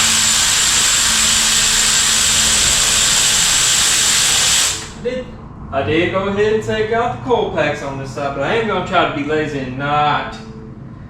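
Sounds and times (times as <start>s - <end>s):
pressurized air hissing: 0.0s - 5.0s.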